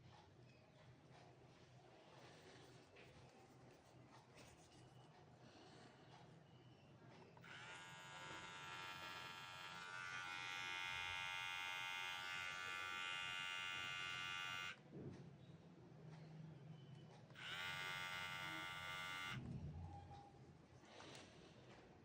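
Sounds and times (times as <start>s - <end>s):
beard trimmer buzzing: 7.4s - 14.8s, 17.4s - 19.4s.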